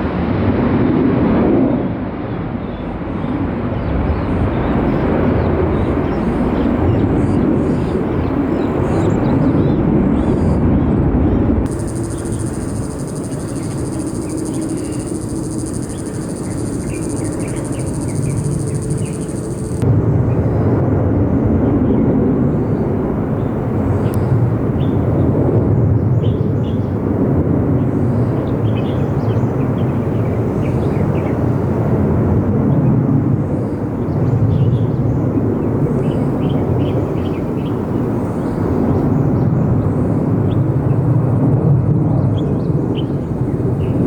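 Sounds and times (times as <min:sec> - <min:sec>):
distant jet engines rumbling: 0:02.0 - 0:44.0
faint bird chirps: 0:11.7 - 0:19.8.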